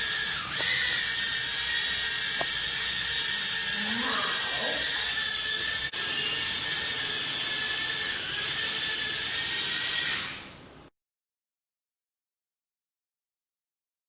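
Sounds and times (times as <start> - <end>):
drone propellers whirring: 0.0 - 10.5.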